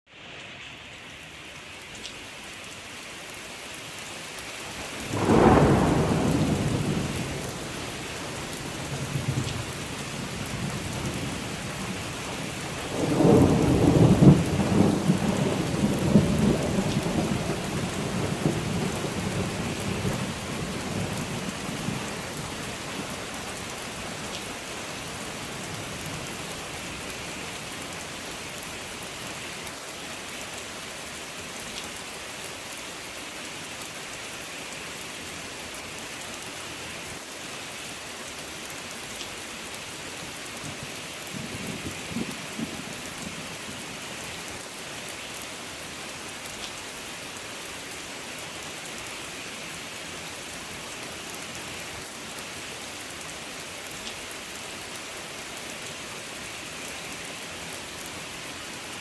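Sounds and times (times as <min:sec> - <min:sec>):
steady rain falling: 0:00.1 - 0:59.0
thunder rumbling: 0:05.1 - 0:11.9, 0:12.9 - 0:22.4.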